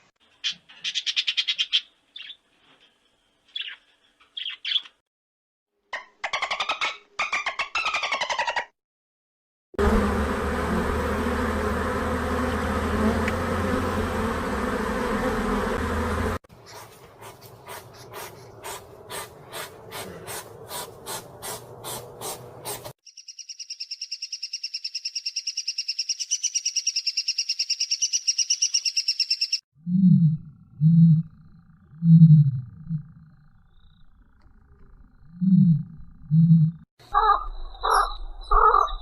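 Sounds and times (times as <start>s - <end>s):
insects buzzing: 9.8s - 29.6s
insect chirping: 23.0s - 29.6s, 30.8s - 36.8s
insect high-pitched trill: 23.0s - 29.6s.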